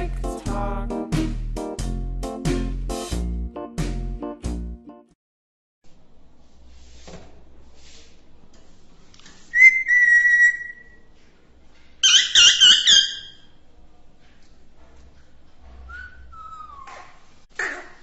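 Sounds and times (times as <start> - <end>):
parrot whistling: 9.5 - 11.1, 12.0 - 13.5, 15.9 - 17.2.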